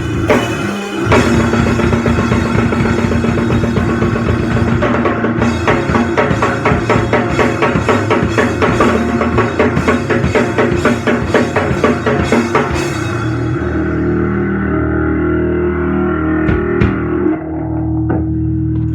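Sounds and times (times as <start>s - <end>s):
drum kit fast beat: 0.0s - 14.0s
distorted guitar and bass: 0.0s - 18.9s.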